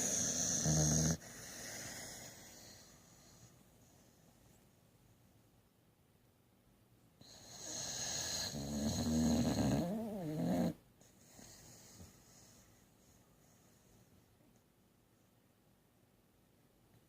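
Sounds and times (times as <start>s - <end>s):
dog snoring: 0.0s - 3.4s, 7.2s - 12.1s
faint dog breath: 0.0s - 4.6s, 11.0s - 14.5s.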